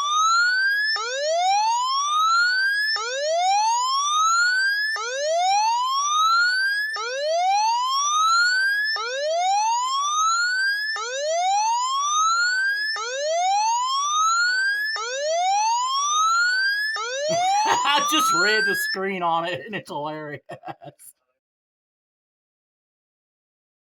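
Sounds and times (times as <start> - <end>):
electronic siren whooping: 0.0 - 19.1.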